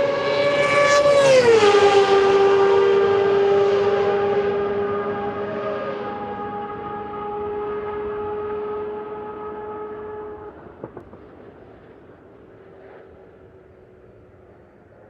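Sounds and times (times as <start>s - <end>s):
race car engine at high revs: 0.0s - 11.0s.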